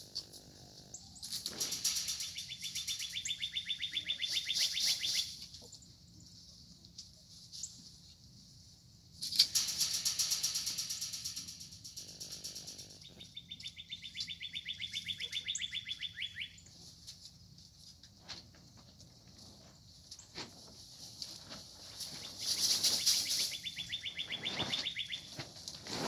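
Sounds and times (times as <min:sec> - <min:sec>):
bird chattering chirp: 0:00.9 - 0:05.5, 0:12.8 - 0:16.7, 0:22.2 - 0:25.4
birds flapping wings: 0:22.0 - 0:23.6.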